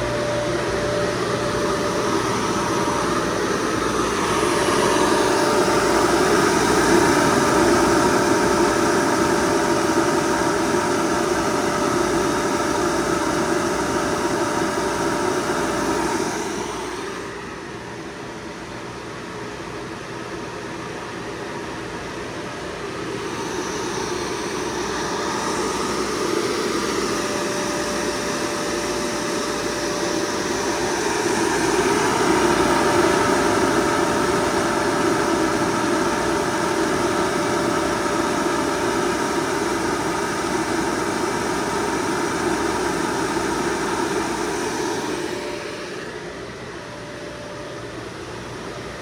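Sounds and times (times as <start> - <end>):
air-conditioning unit running: 0.0 - 49.0
thin steady whine: 0.0 - 49.0.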